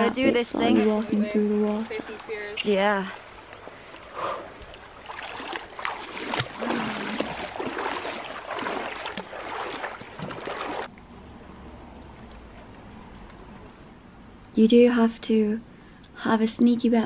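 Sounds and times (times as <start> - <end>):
feet wading through water: 1.0 - 10.9.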